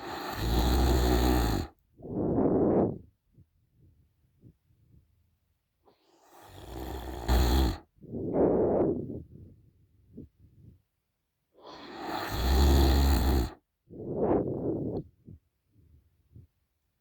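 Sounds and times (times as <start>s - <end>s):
woman snoring: 0.0s - 2.6s, 6.2s - 8.6s, 11.6s - 13.6s.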